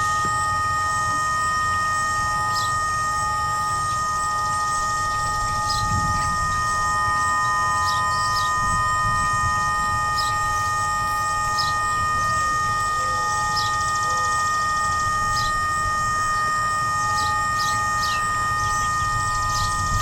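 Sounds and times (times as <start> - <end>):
electronic siren buzzing held tones: 0.0 - 20.0
low wind rumble: 4.4 - 7.2, 18.6 - 20.0.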